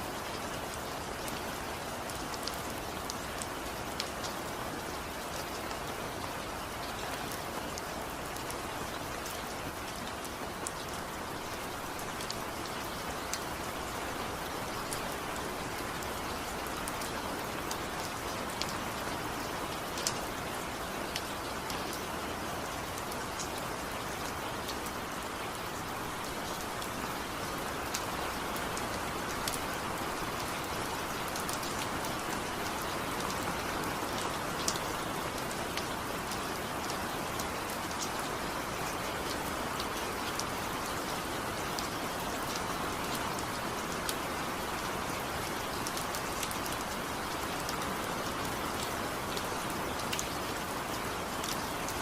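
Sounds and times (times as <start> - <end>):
steady rain hiss: 0.0 - 52.0
raindrop ticks: 34.2 - 34.8.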